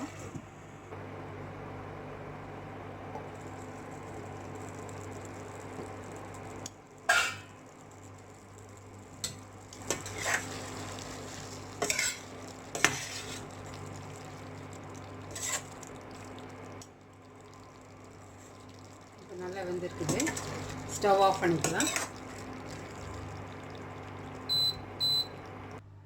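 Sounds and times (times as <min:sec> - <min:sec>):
steady low hum: 0:00.0 - 0:26.0
gravy simmering in a pan: 0:03.3 - 0:25.3
spoon scraping a pan: 0:09.9 - 0:10.6, 0:11.8 - 0:13.4.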